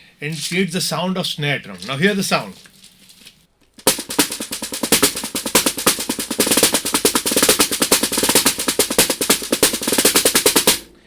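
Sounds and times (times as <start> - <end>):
fast snare-like drum strokes: 3.8 - 11.0.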